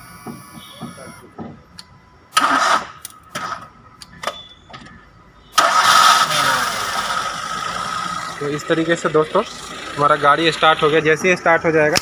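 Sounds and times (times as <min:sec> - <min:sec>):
car engine cranking: 0:02.3 - 0:12.0
car engine running: 0:05.6 - 0:12.0.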